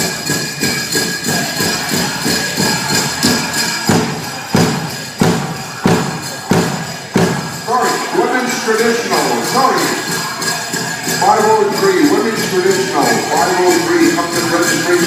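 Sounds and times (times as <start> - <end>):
drum group drumming: 0.0 - 8.2
jingle of dancers' bells: 0.0 - 15.0.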